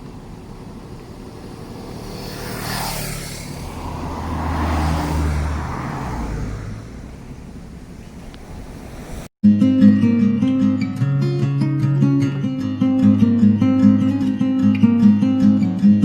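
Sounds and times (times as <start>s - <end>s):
vehicle passing by: 0.0s - 9.3s.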